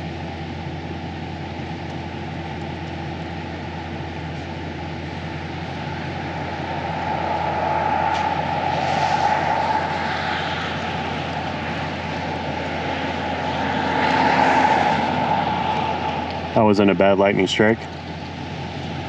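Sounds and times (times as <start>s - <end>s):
vehicle engine idling: 0.0s - 19.0s
rushing noise: 5.0s - 18.8s.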